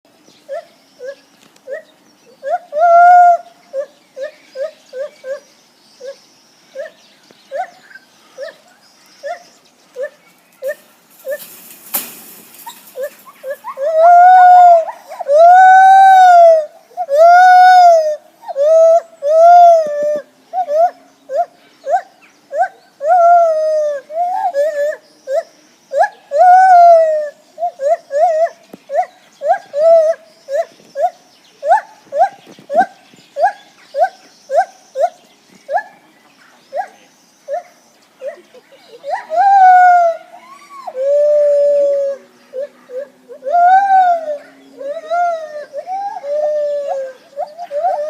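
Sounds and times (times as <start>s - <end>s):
gibbon hooting and whooping: 12.6s - 35.9s, 37.5s - 48.0s.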